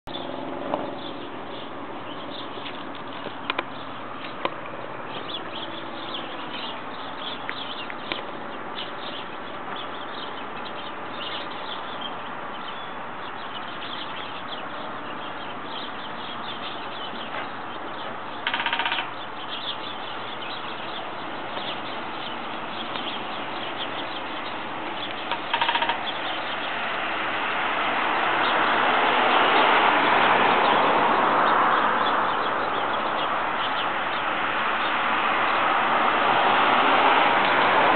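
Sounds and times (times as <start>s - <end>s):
woodpecker tapping on pole: 3.0s - 3.7s, 18.4s - 19.2s, 25.0s - 26.4s
passing vehicle: 26.3s - 37.9s.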